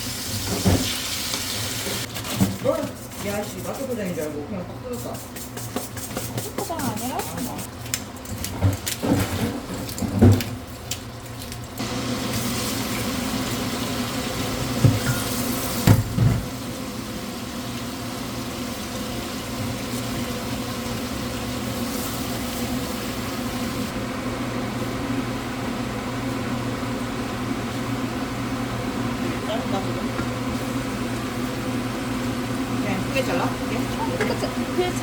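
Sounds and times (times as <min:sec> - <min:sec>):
kitchen cooking hiss: 0:00.0 - 0:02.1, 0:11.8 - 0:24.0.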